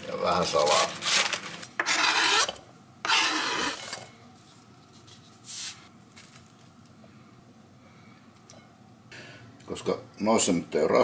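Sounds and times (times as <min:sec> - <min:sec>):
rasping rustling handling noise: 0:00.1 - 0:01.8.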